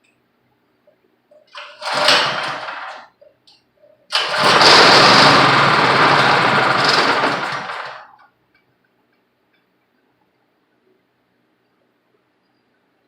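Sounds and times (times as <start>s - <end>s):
small engine pull-started and running: 1.5s - 3.1s, 4.1s - 8.2s.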